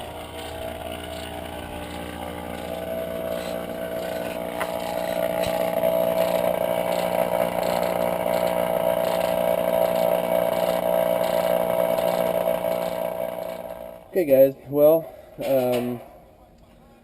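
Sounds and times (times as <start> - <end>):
motor drone: 0.0 - 14.1.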